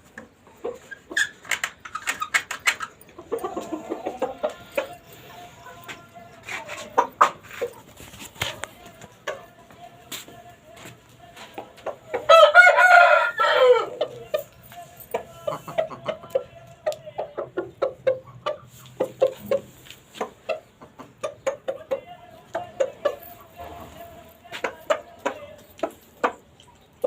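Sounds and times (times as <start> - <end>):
chickens clucking: 0.0 - 27.0
rooster crowing: 12.3 - 14.0.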